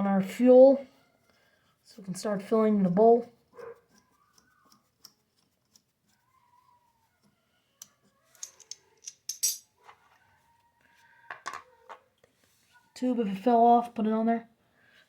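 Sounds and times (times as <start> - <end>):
metal tools clicking and jingling: 8.3 - 9.8.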